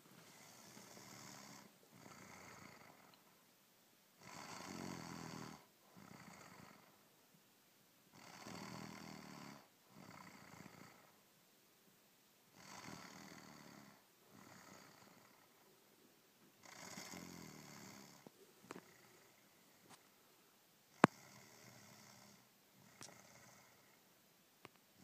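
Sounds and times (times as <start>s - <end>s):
faint snoring: 0.2s - 3.3s, 4.2s - 7.0s, 8.1s - 11.2s, 12.5s - 15.8s, 16.6s - 20.1s, 20.9s - 24.1s.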